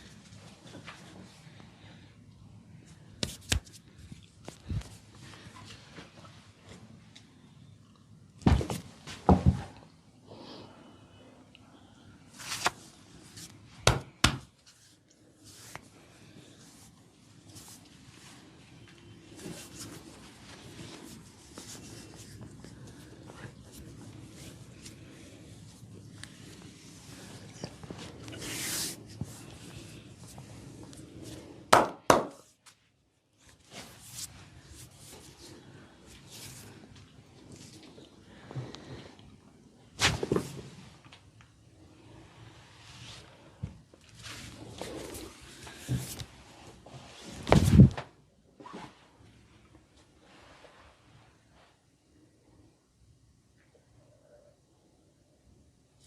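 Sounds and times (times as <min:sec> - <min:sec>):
hands slapping and thumping body: 0:03.2 - 0:03.8, 0:13.8 - 0:14.5.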